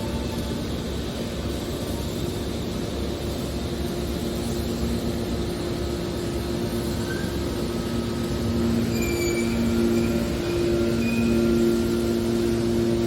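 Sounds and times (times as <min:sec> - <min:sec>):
hydraulic baler machine humming: 0:07.3 - 0:13.0.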